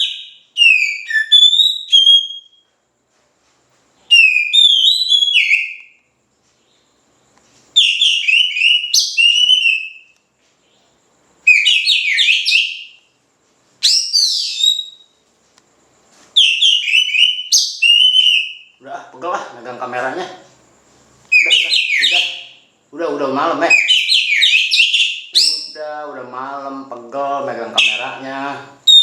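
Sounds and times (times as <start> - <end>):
bird singing whistled phrases: 0.0 - 2.6, 4.0 - 6.0, 7.8 - 10.2, 11.4 - 13.0, 13.8 - 15.1, 16.4 - 18.7, 21.3 - 22.6, 23.7 - 25.9, 27.8 - 28.2.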